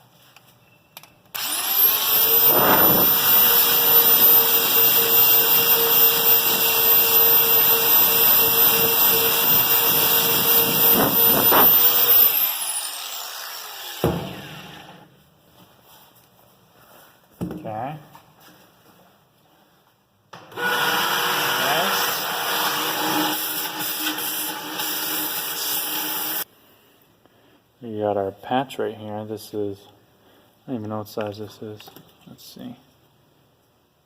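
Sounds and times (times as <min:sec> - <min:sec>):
electric grinder whining: 0:01.4 - 0:15.0, 0:20.5 - 0:26.4
grinder grinding rubber: 0:01.4 - 0:15.0, 0:20.6 - 0:26.4.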